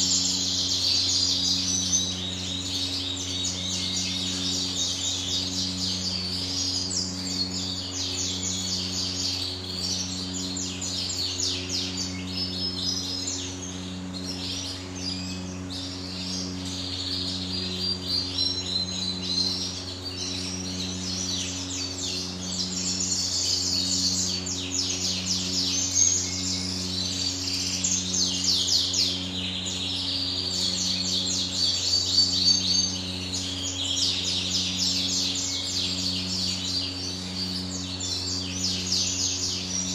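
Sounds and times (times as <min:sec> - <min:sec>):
pulsing mechanical hum: 0:00.0 - 0:39.9
canaries singing and chirping: 0:00.1 - 0:02.0, 0:22.6 - 0:39.9.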